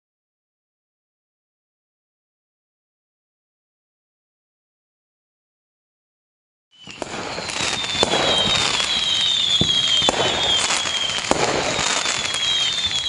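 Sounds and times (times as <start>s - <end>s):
whistles sliding down in pitch: 6.7s - 13.0s
firework bangs and crackling: 6.8s - 13.0s.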